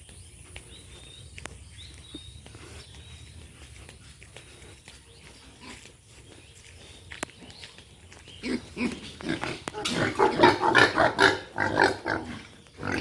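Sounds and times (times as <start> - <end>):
pigs grunting: 8.2 - 13.0.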